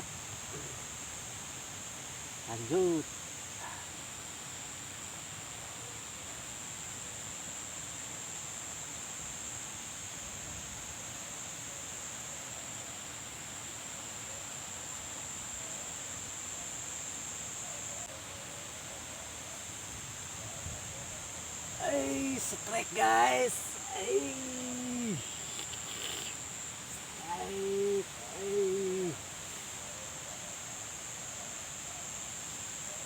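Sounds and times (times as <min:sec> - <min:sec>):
even hiss: 0:00.0 - 0:05.5, 0:19.9 - 0:33.0
high-pitched insect chorus: 0:00.0 - 0:05.8, 0:18.7 - 0:33.0.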